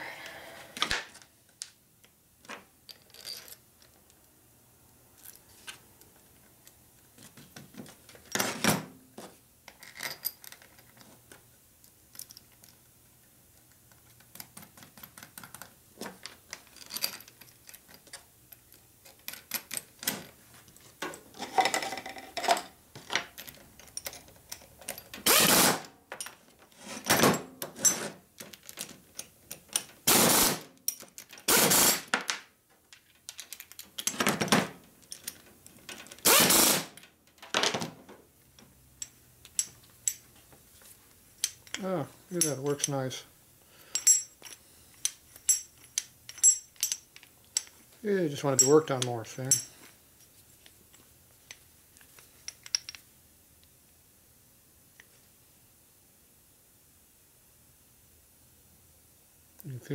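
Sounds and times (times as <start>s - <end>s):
metal parts clicking and clinking: 2.4s - 4.3s, 9.6s - 12.9s, 13.6s - 30.2s, 30.8s - 37.9s, 38.6s - 40.4s, 41.3s - 43.2s, 43.8s - 53.1s.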